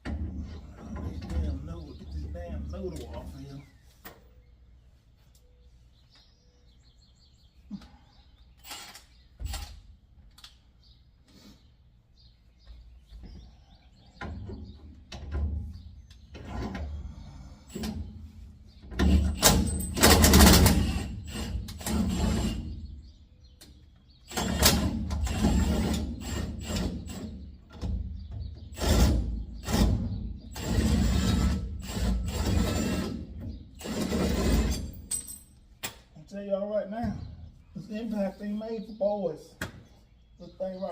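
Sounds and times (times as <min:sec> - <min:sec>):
light metal clinks and knocks: 0:35.0 - 0:35.7.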